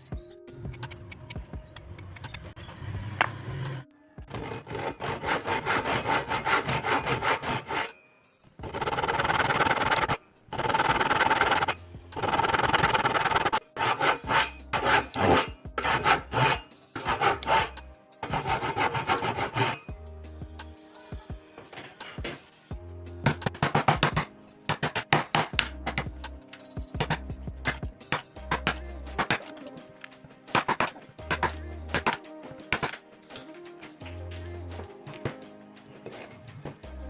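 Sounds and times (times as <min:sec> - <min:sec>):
hand saw cutting wood: 0:04.3 - 0:07.9.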